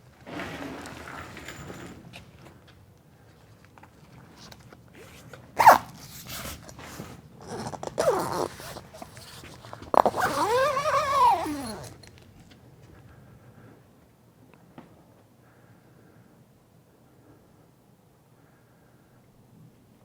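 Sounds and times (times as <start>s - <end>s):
velcro straps ripping: 5.0s - 12.1s.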